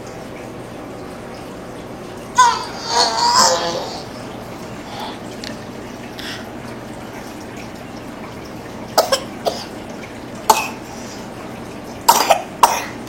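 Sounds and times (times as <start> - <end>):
person coughing: 9.0 - 9.7, 10.5 - 10.8, 12.1 - 13.0.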